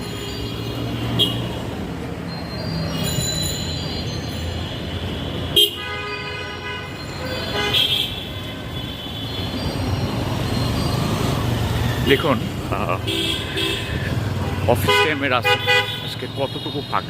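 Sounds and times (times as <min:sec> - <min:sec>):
engine and road rumble: 0:00.0 - 0:17.0
vehicle horns honking: 0:01.1 - 0:01.7, 0:04.9 - 0:09.5, 0:13.0 - 0:17.0.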